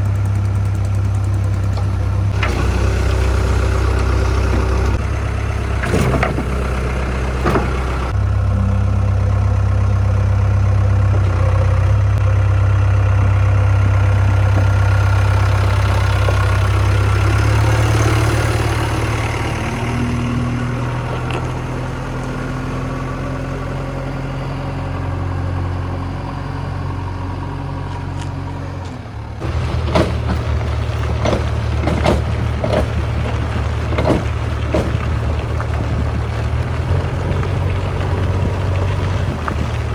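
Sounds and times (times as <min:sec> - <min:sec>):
diesel engines running: 0:00.0 - 0:39.9
sharp knocks: 0:29.4 - 0:35.6.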